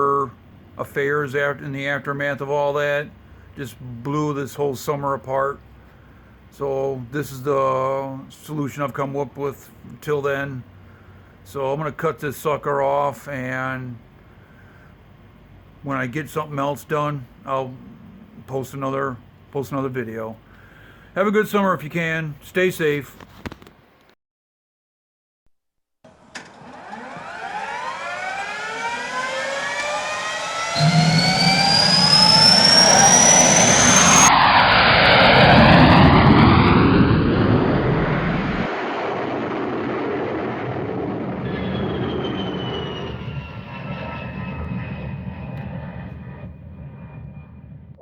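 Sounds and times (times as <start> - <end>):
aircraft roar passing overhead: 0.0 - 5.0, 5.6 - 7.5, 26.5 - 48.0.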